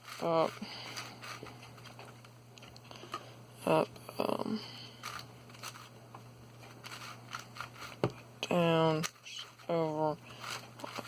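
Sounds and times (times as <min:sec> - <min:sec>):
puzzle cube scrape: 0:06.6 - 0:08.0, 0:10.2 - 0:11.0.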